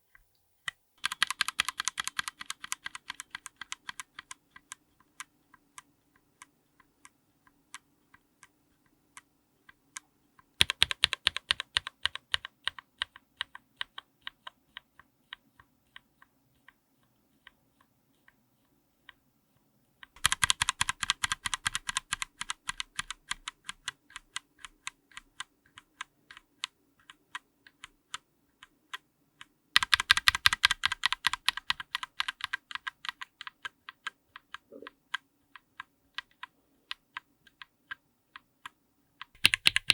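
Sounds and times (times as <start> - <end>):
mechanical keyboard keystrokes: 1.0 - 7.1, 10.6 - 16.1, 20.0 - 29.0, 29.8 - 39.9.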